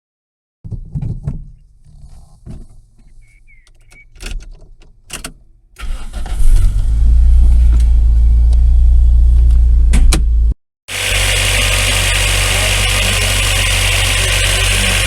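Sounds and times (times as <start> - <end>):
car engine starting and idling: 5.0 - 15.0.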